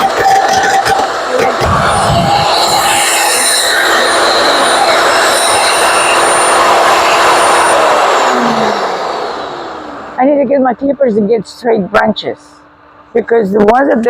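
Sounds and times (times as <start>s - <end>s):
motor winding down: 0.0s - 10.6s
electric wood chipper running: 0.0s - 11.4s.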